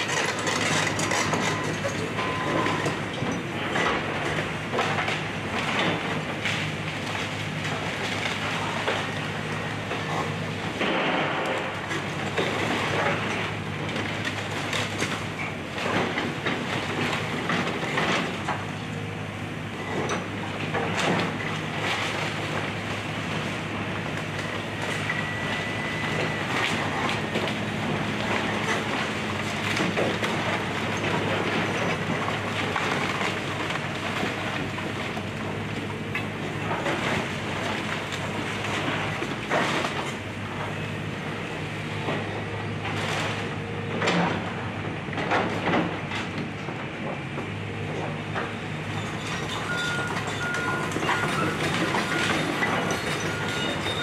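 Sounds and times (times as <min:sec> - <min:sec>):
debris cracking and crunching: 0:00.0 - 0:03.1, 0:20.6 - 0:40.5, 0:49.0 - 0:54.0
excavator diesel engine running: 0:00.0 - 0:54.0
machine squeal: 0:48.9 - 0:54.0.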